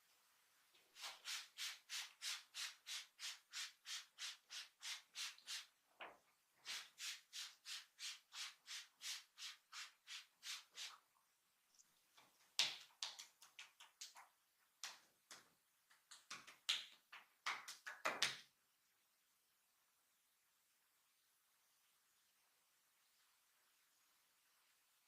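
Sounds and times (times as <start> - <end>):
hands rubbing over skin: 1.0 - 5.7, 6.6 - 11.0, 12.2 - 15.4.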